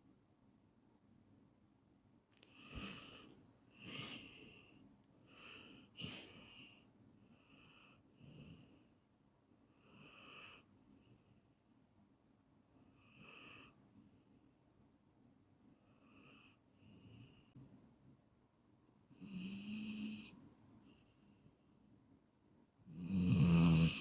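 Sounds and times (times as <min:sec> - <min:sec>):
person snoring faintly: 0:02.5 - 0:04.7, 0:22.9 - 0:24.0.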